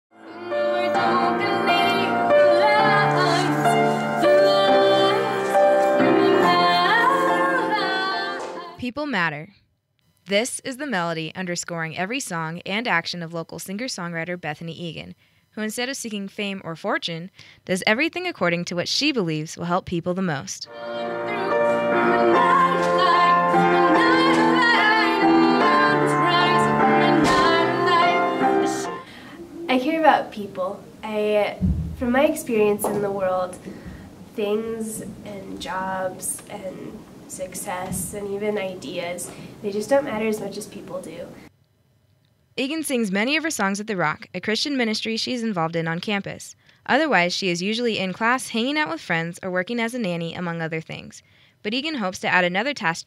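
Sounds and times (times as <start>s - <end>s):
instrumental accompaniment: 0.1s - 8.8s, 20.7s - 29.7s
woman singing: 0.2s - 8.8s, 20.7s - 29.8s.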